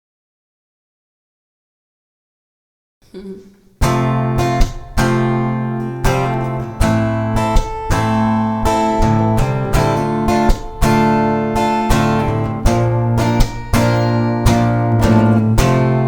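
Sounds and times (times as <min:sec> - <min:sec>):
acoustic guitar strumming chords: 0:03.2 - 0:16.0.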